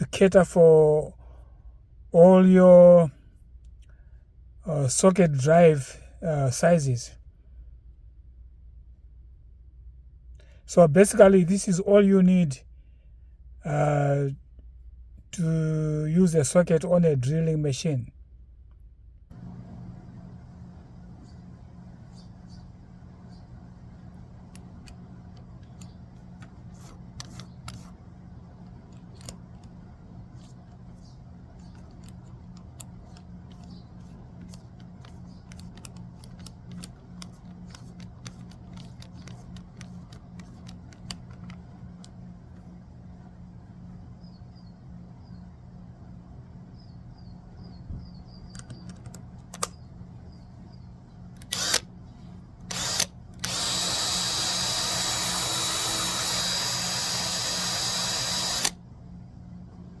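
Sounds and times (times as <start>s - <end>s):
handling clicks: 24.4s - 28.0s, 28.6s - 30.9s, 31.5s - 42.6s, 48.4s - 49.8s
power drill running: 51.4s - 51.9s, 52.7s - 58.8s.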